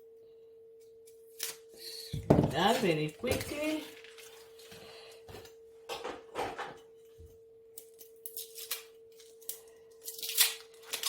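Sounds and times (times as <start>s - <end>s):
onion skin rustling and scraping: 1.3s - 4.7s, 7.8s - 11.0s.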